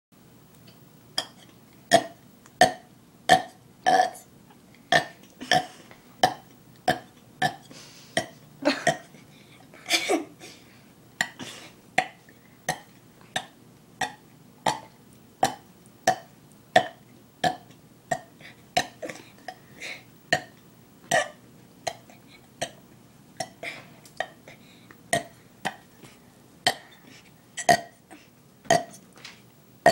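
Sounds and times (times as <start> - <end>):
person burping: 1.2 - 4.2, 4.9 - 9.2, 11.2 - 22.8, 25.1 - 25.8, 26.6 - 28.1, 28.7 - 29.0.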